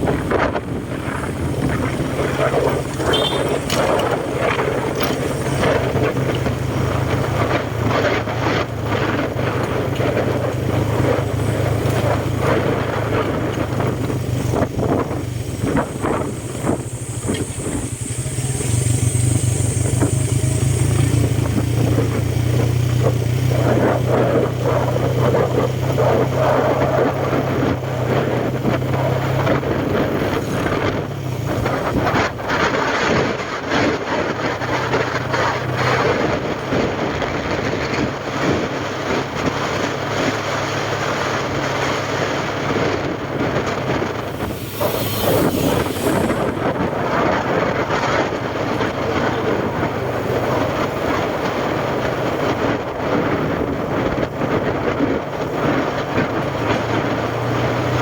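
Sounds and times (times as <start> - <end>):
vehicle engine running: 0.0 - 58.0
rattles and knocks: 1.8 - 8.2.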